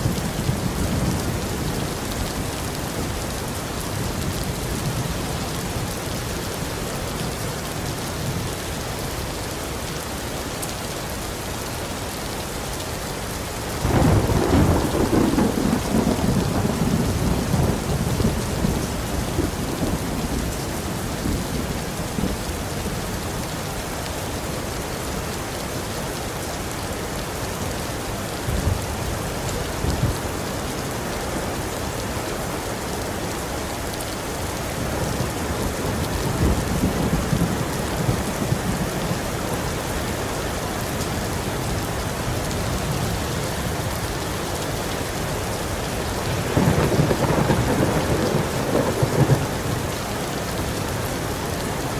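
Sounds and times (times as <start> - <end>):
heavy rain: 0.0 - 51.9
thunder clap rumbling: 13.8 - 20.6, 34.9 - 38.9, 46.3 - 50.0.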